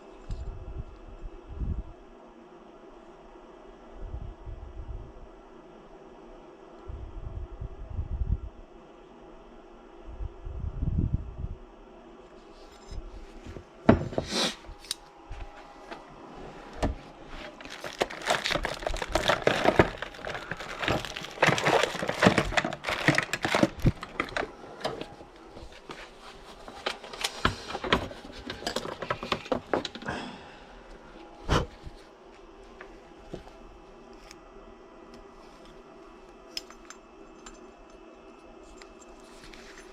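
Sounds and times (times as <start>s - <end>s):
rustling: 12.4s - 30.0s
metal parts clinking: 17.6s - 24.5s, 36.5s - 38.0s.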